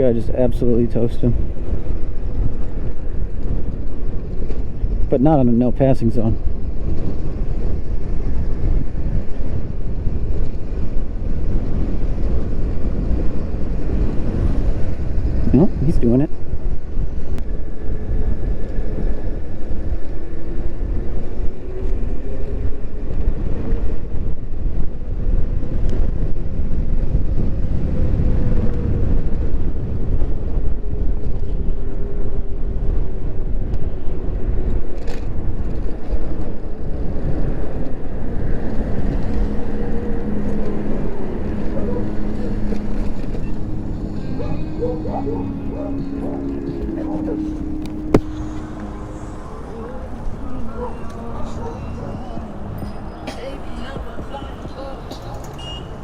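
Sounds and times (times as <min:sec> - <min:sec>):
road rumble: 0:00.0 - 0:56.0
wind buffeting microphone: 0:00.0 - 0:56.0.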